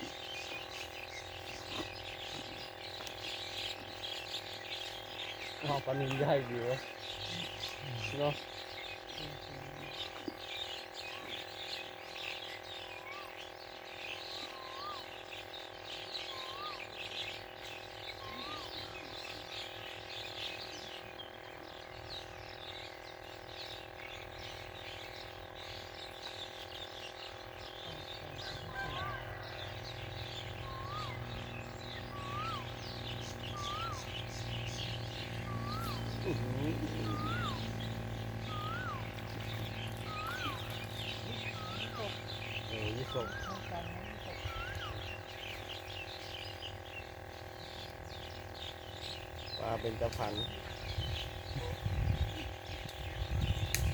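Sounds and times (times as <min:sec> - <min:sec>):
birds chirping: 0:00.0 - 0:53.9
low steady hum: 0:00.0 - 0:53.9
bird whistling rising and falling: 0:12.8 - 0:13.4, 0:14.1 - 0:15.2, 0:16.2 - 0:17.4, 0:18.1 - 0:19.4, 0:28.4 - 0:45.2.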